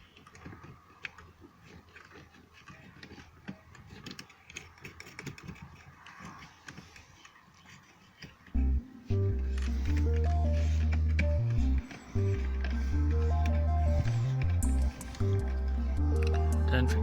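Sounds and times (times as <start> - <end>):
small clicks and light knocks: 0.0 - 8.6.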